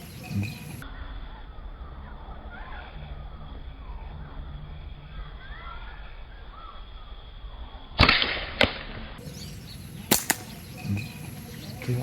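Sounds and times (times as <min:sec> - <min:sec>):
small birds chirping: 0:00.0 - 0:08.0, 0:09.2 - 0:12.0
rushing shot: 0:08.0 - 0:09.2, 0:10.1 - 0:10.6
slingshot rubber band snap: 0:10.1 - 0:10.5.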